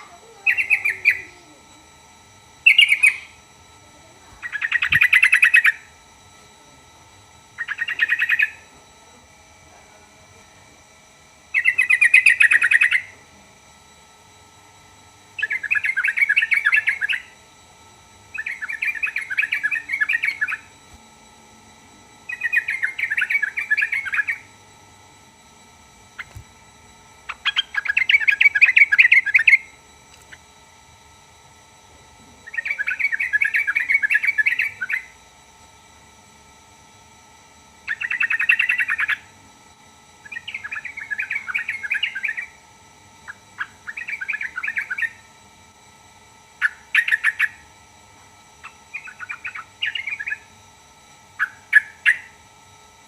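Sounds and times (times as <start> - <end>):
bulbul singing chattering phrases: 0.0 - 2.0, 2.6 - 6.0, 7.5 - 8.8, 11.5 - 13.2, 15.4 - 17.4, 18.3 - 20.7, 22.2 - 24.6, 27.2 - 30.5, 32.3 - 35.2, 37.8 - 39.3, 40.2 - 42.6, 43.2 - 45.3, 46.6 - 47.6, 48.6 - 50.5, 51.4 - 52.4
faint steady high tone: 0.0 - 14.3, 15.0 - 30.3, 31.7 - 35.3.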